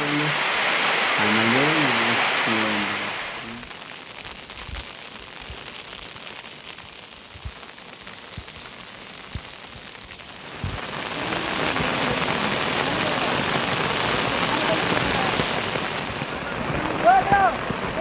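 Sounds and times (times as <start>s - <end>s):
steady rain: 0.0s - 18.0s.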